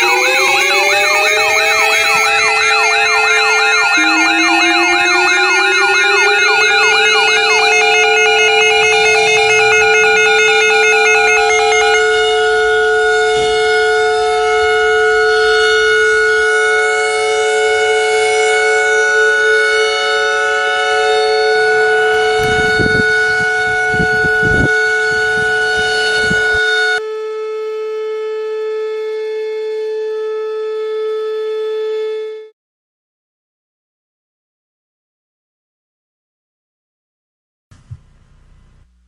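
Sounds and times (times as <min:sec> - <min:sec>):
electronic alert tone: 0:00.0 - 0:12.1.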